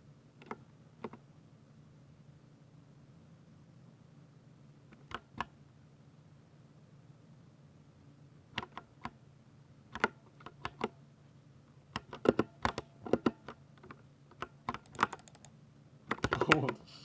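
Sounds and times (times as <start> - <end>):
mechanical keyboard typing: 10.0 - 10.9, 12.0 - 15.5, 16.1 - 16.8.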